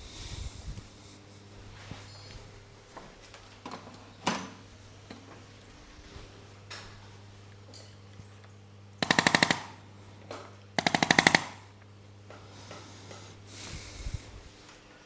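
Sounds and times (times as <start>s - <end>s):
rapid mechanical tapping: 9.0s - 9.9s, 10.8s - 13.5s.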